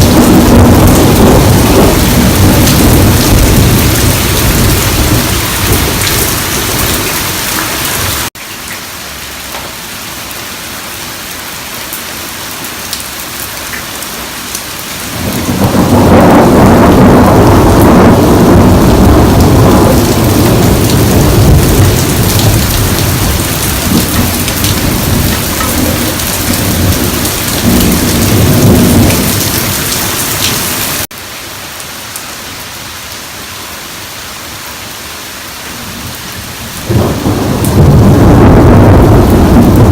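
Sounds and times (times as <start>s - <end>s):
thunder rolling: 0.0s - 8.3s, 15.0s - 30.8s, 36.5s - 39.9s
heavy rain pouring: 0.0s - 39.9s.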